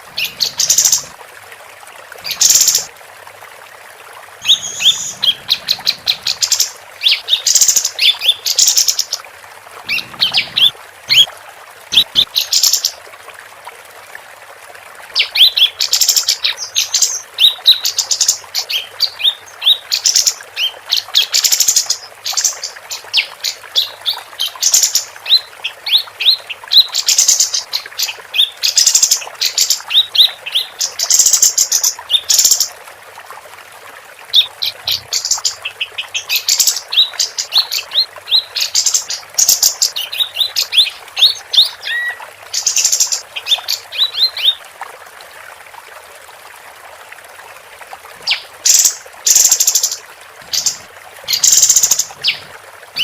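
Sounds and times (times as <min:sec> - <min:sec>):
songbird chirping and trilling: 0:04.4 - 0:09.2, 0:09.9 - 0:11.3.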